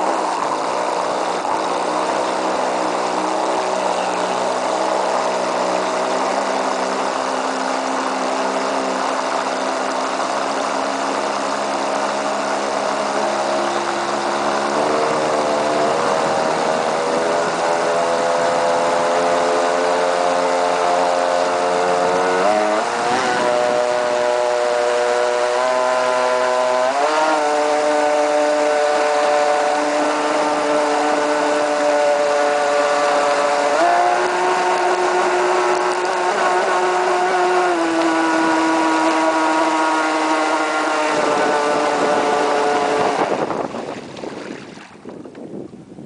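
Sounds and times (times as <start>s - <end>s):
electric motor whine of rc boat: 0.0s - 43.8s.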